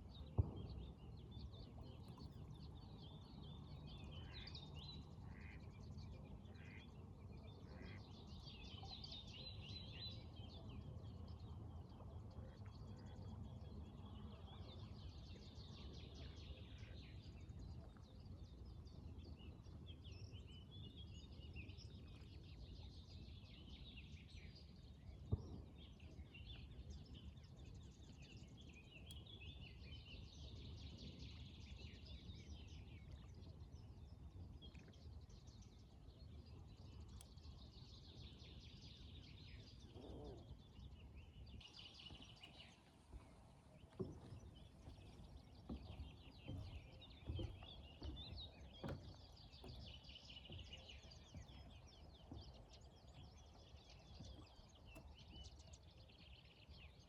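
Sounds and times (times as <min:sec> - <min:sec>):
small birds chirping and trilling: 0:34.8 - 0:57.0.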